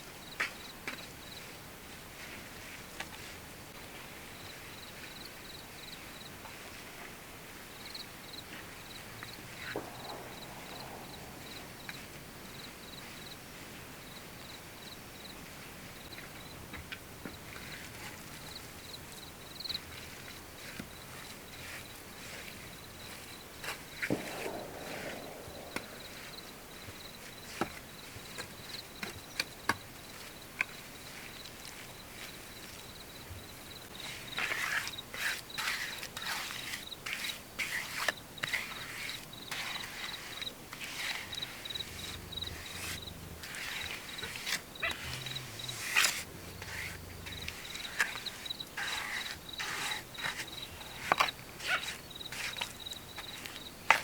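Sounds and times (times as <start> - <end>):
crickets chirping: 0.2 - 1.6, 4.4 - 6.3, 7.7 - 54.0
rustling of dry material: 33.9 - 54.0.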